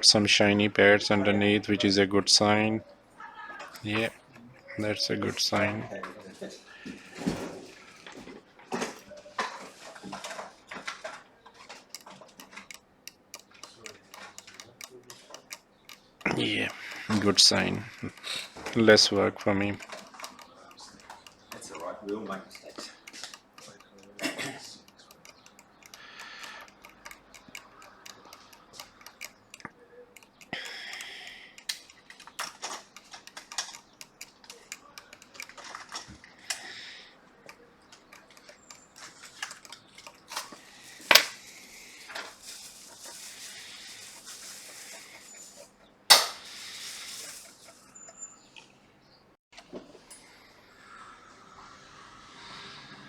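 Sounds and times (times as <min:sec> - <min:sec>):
small tools clicking and tapping: 0:03.6 - 0:48.7
hiss: 0:46.4 - 0:47.4, 0:51.2 - 0:53.0.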